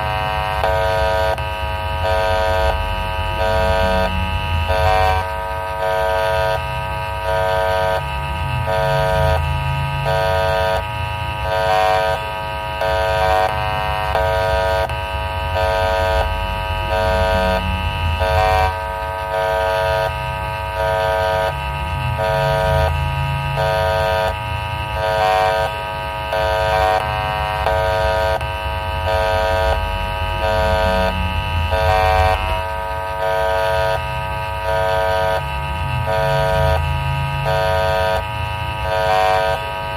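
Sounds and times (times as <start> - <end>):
level crossing alarm tone: 0.0 - 39.9.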